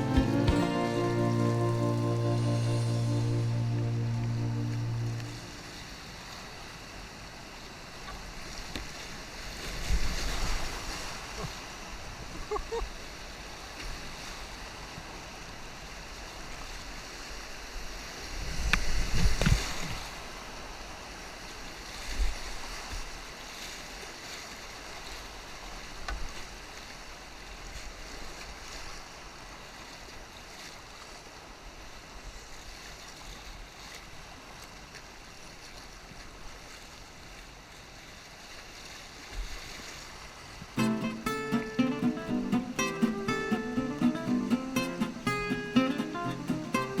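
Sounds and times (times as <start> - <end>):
river water rushing: 0.0 - 8.4, 39.9 - 47.0.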